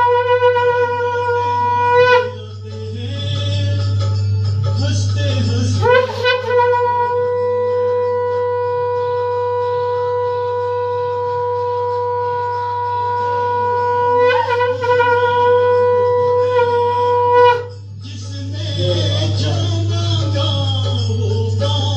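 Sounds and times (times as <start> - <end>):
conch shell blown: 0.0 - 2.7, 5.8 - 18.0.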